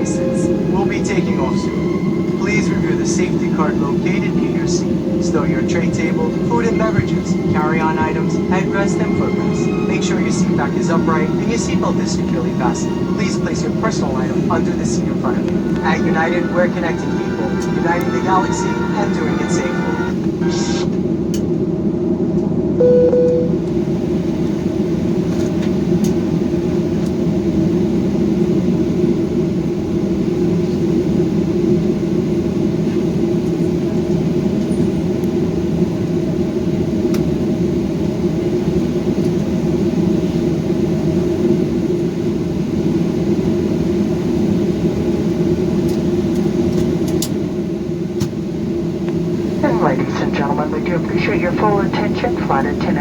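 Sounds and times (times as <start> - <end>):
brief cabin tone: 0.0 - 20.2, 22.8 - 23.7
airliner cabin rumble: 0.0 - 53.0.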